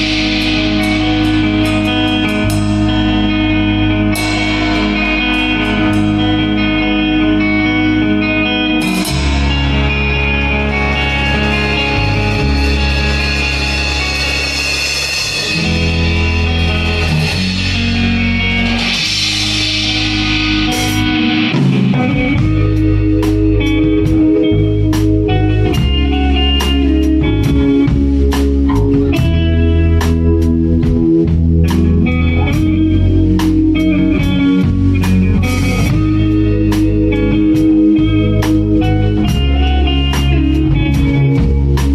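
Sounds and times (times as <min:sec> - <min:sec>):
cymbals: 0:00.0 - 0:24.3
bass guitar: 0:00.0 - 0:41.9
drum kit beat: 0:00.0 - 0:41.9
electric guitar: 0:00.0 - 0:41.9.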